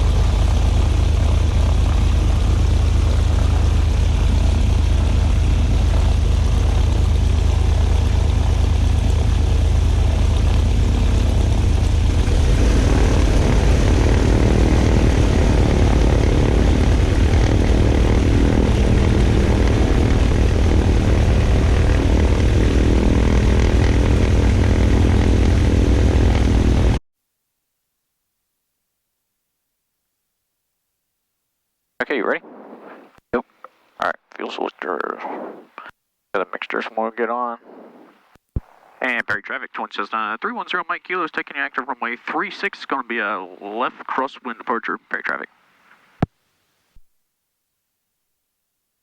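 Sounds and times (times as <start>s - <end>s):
twin piston aircraft engines: 0.0s - 27.0s.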